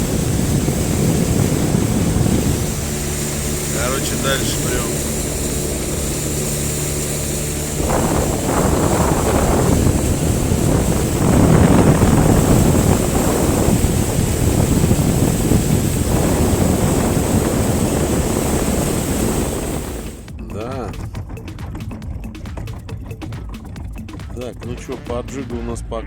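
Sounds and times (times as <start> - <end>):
wind on microphone: 0.0 - 20.3
water against hull: 0.0 - 20.4
motorboat engine hum: 0.0 - 24.8.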